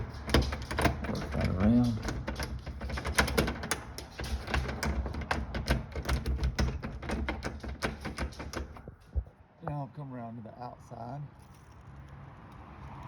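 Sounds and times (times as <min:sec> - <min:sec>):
door lock metallic clicks and rattles: 0:00.0 - 0:09.2.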